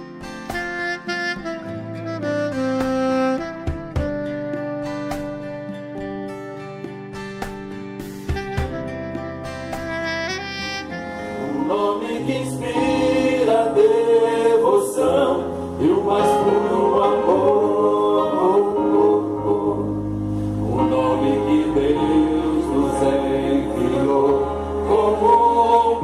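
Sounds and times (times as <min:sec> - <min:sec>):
instrumental accompaniment: 0:00.0 - 0:26.0
vocal group singing gospel: 0:11.4 - 0:26.0.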